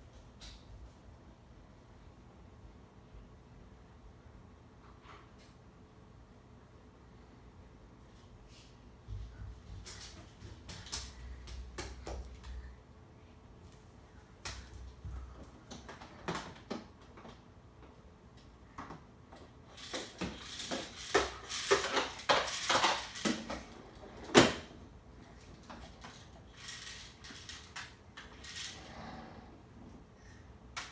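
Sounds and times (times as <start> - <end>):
clattering and rattling: 19.7 - 24.7
hard objects clicking and knocking: 19.8 - 24.6.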